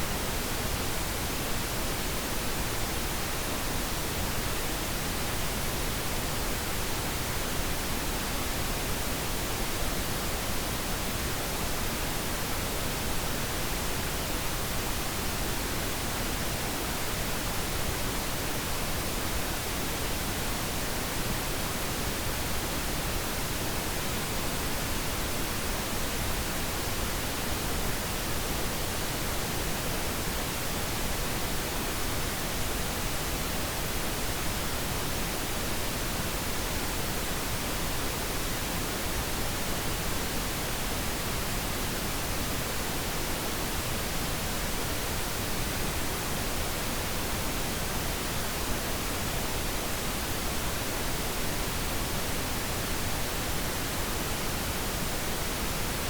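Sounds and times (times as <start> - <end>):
steady pink noise hiss: 0.0 - 56.0.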